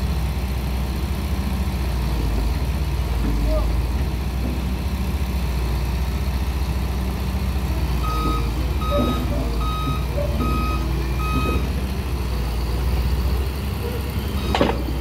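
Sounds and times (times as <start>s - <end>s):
diesel engine running: 0.0s - 15.0s
reversing alarm beeping: 8.0s - 11.8s.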